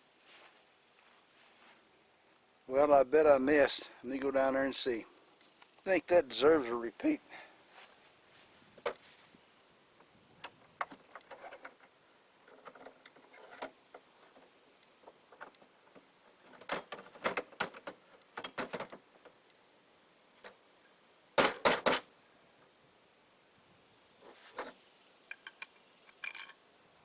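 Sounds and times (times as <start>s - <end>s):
sharp knocks and clatters: 8.8s - 9.0s, 10.5s - 19.3s, 21.4s - 22.1s.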